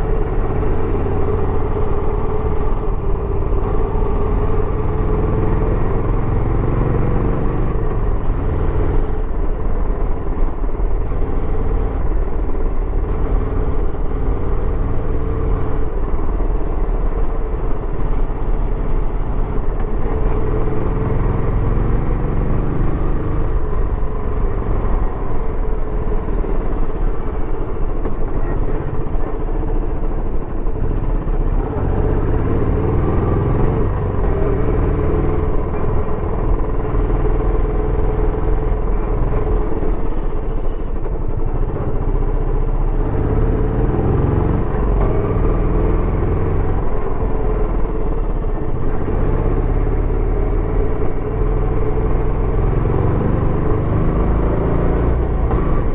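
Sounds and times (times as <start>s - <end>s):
motorcycle engine revving: 19.5s - 25.6s, 31.2s - 38.0s, 48.8s - 55.9s.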